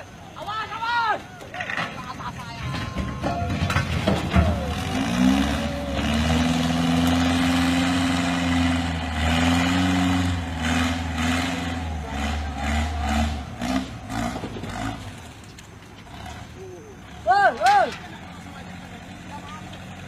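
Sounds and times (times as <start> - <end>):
heavy machine engine revving: 2.6 - 17.4.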